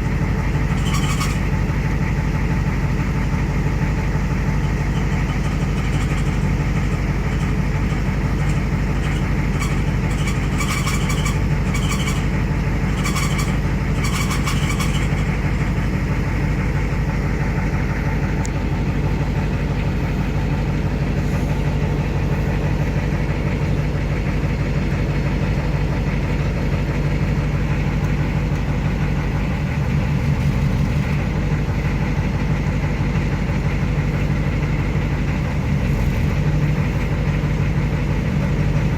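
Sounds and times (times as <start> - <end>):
diesel engine idling: 0.0 - 38.9
faint high squeal from transmission: 0.4 - 1.7, 4.6 - 16.1.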